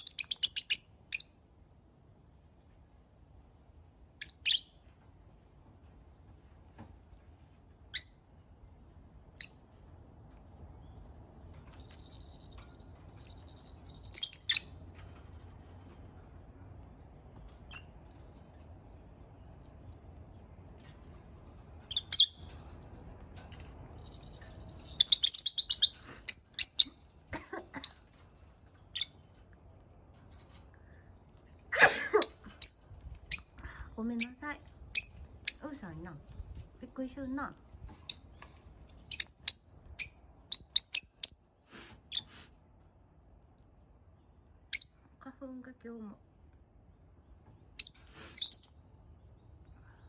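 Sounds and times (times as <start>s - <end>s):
lovebirds chirping: 0.0s - 1.4s, 4.2s - 4.8s, 13.3s - 14.8s, 21.8s - 22.5s, 24.8s - 28.2s, 31.8s - 36.1s, 39.0s - 41.4s, 47.8s - 50.0s.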